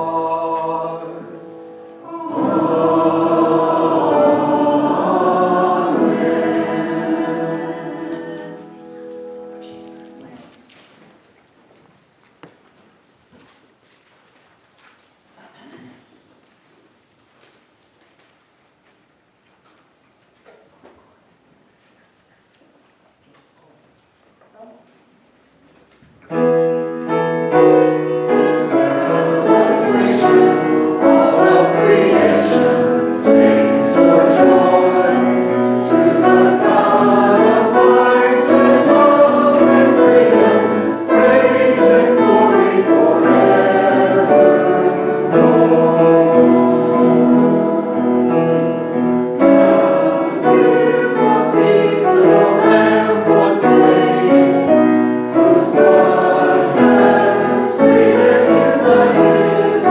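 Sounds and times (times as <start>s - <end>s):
instrumental accompaniment: 0.0s - 10.4s, 26.3s - 59.9s
congregation and choir singing a hymn: 0.0s - 10.6s, 26.3s - 59.9s.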